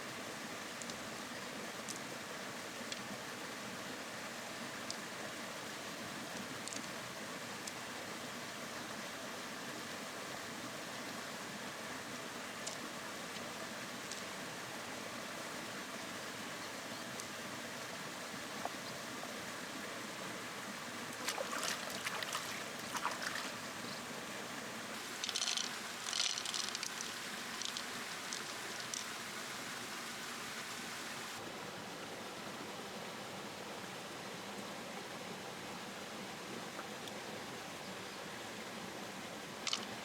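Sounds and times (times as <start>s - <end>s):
river water rushing: 0.0s - 31.6s
clicking and scraping: 25.2s - 29.1s.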